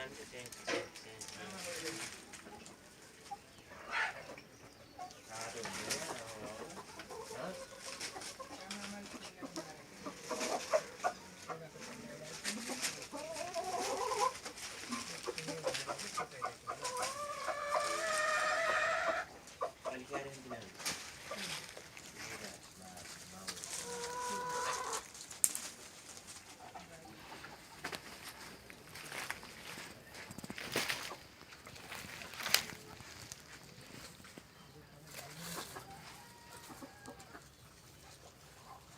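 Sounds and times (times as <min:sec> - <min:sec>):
chickens clucking: 0:00.0 - 0:38.9
long drawn-out chicken call: 0:16.8 - 0:19.4, 0:23.7 - 0:25.1, 0:35.4 - 0:37.5.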